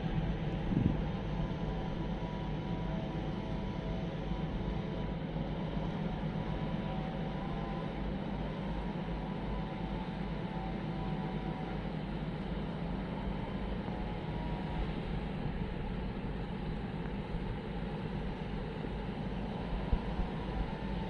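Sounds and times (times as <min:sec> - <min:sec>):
wind buffeting microphone: 0:00.0 - 0:01.6.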